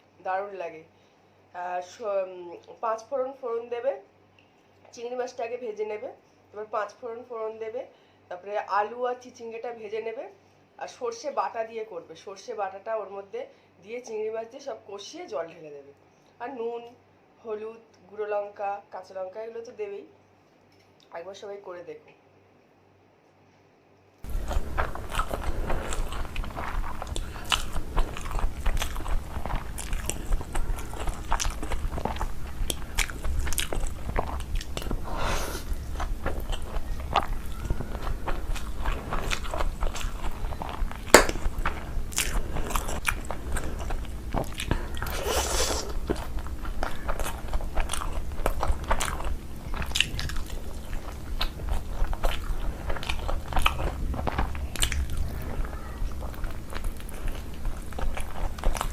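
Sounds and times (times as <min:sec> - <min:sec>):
chewing with crisp crunches: 0:24.2 - 0:58.9.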